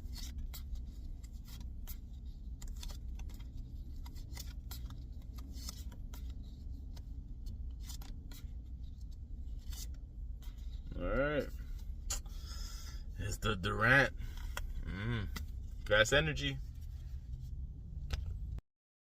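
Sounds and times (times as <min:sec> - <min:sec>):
trading cards clicking and rustling: 0:00.0 - 0:13.4, 0:14.1 - 0:17.4
steady low rumble: 0:06.1 - 0:18.6.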